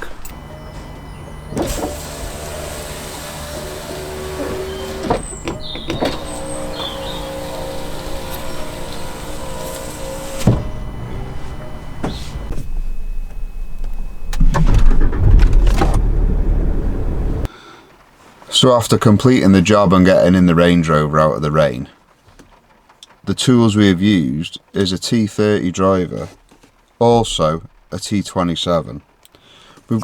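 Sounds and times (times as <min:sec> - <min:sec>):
electric window motor running: 0:00.0 - 0:17.5
loud low rumble: 0:14.4 - 0:17.5.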